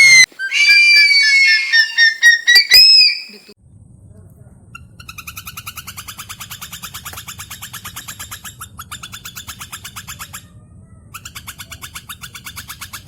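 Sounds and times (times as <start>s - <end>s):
eagle chattering calls: 0.0s - 3.5s.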